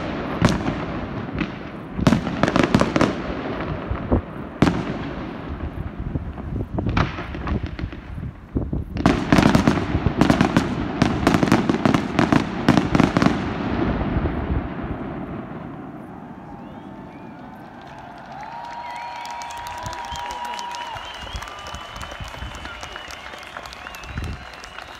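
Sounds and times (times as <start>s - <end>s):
fireworks booms and bangs: 0.0s - 18.7s.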